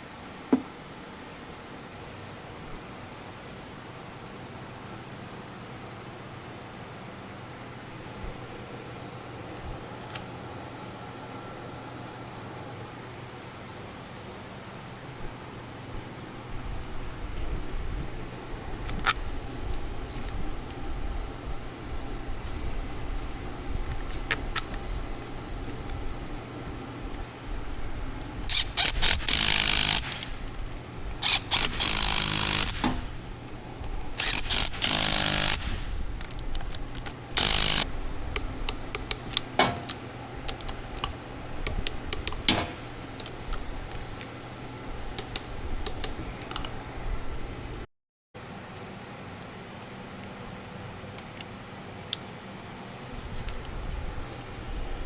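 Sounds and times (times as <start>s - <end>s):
power tool bursts: 28.5s - 30.4s, 31.2s - 33.2s, 34.2s - 36.0s, 37.4s - 37.9s.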